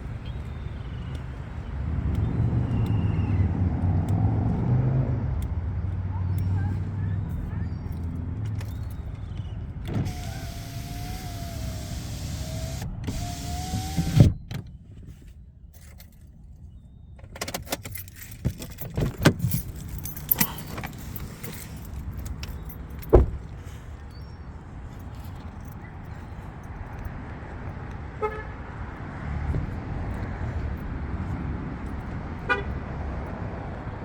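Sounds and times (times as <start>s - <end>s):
small electric motor whining: 10.0s - 14.2s
thump: 23.1s - 23.4s.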